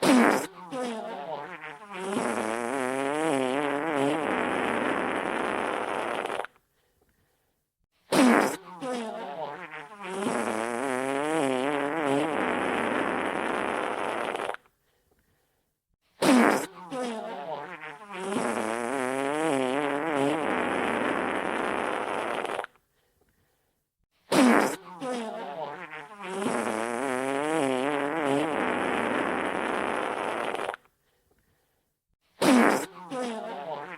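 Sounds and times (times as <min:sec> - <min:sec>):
wet fart sound effect: 0:00.0 - 0:06.6, 0:08.1 - 0:14.7, 0:16.2 - 0:22.8, 0:24.3 - 0:30.9, 0:32.4 - 0:33.9.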